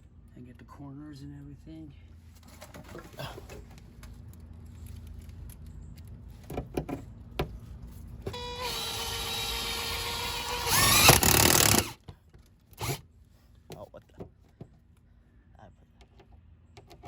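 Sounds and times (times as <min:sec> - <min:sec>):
cordless drill driving screw: 0:08.3 - 0:12.0.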